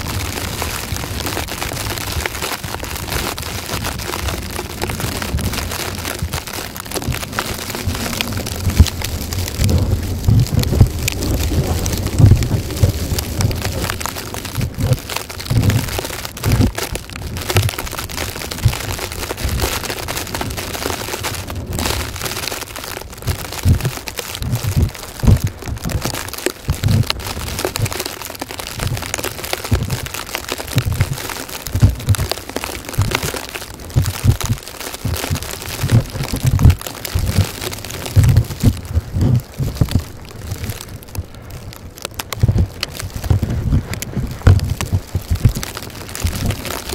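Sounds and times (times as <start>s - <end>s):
wind buffeting microphone: 0.0s - 28.1s, 28.7s - 46.9s
crackling hiss of blowing snow: 0.0s - 46.9s.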